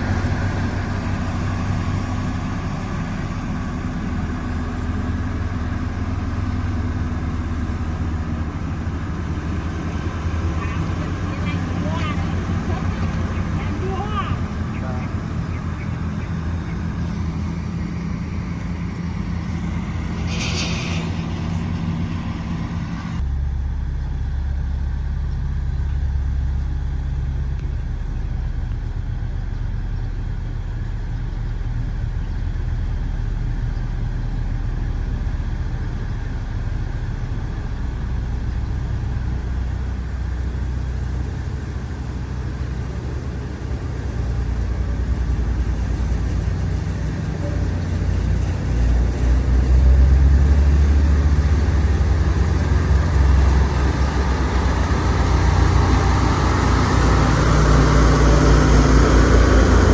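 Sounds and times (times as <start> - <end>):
diesel engine running: 0.0 - 59.9
brief hiss: 20.1 - 21.7.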